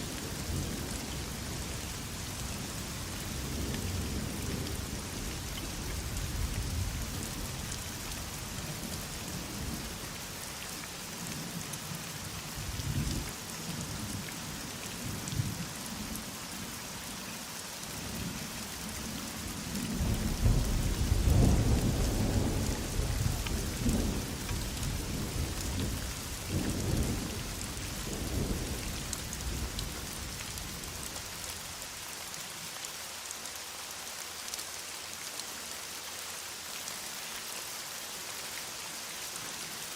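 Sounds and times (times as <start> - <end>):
heavy rain falling: 0.0 - 39.9
thunder rumbling: 19.9 - 30.0.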